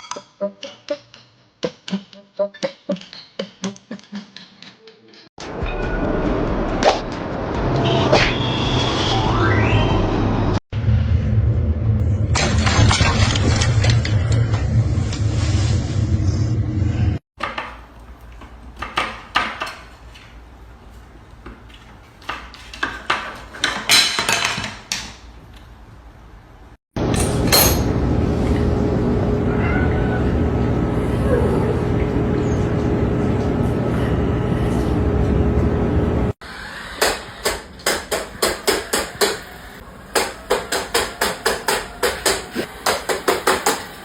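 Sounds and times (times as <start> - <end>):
dishes clinking and clattering: 27.1 - 28.0.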